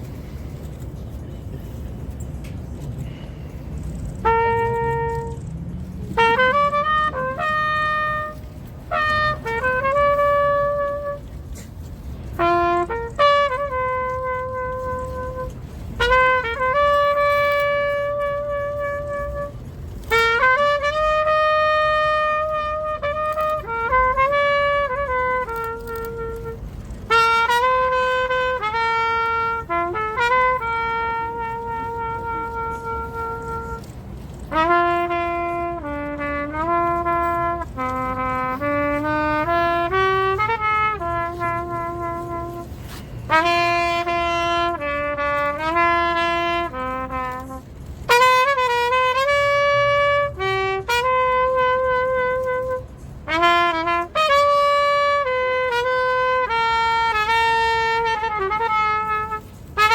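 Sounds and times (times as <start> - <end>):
solo trumpet melody: 0.0 - 59.9.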